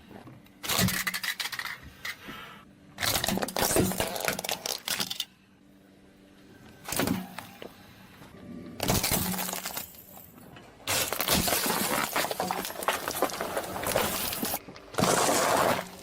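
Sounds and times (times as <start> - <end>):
objects crunching under car tyre: 8.8 - 16.0.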